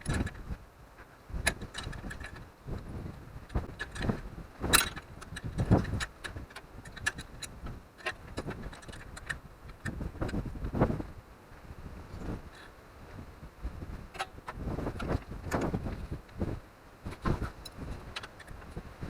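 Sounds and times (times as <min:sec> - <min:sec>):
tools and metal parts clanking: 0:01.4 - 0:02.4, 0:03.5 - 0:09.9.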